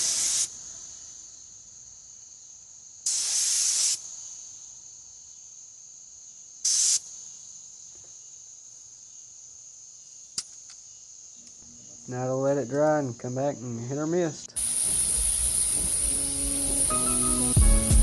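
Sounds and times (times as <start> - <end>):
paint spray gun hissing: 0.0 - 1.2, 3.0 - 4.2, 6.6 - 7.1, 14.6 - 18.0.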